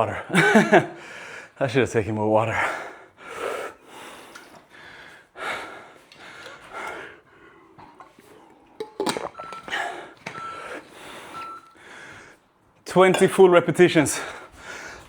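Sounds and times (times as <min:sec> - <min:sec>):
man breathing hard and gasping: 0:00.9 - 0:01.6, 0:02.5 - 0:08.8, 0:09.6 - 0:12.6, 0:14.1 - 0:15.0
short high beeps: 0:09.3 - 0:11.8.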